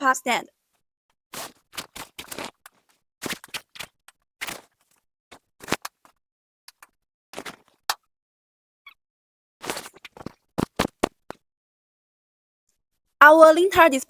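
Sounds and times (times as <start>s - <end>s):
fabric display scraping and rustling: 1.3s - 6.2s.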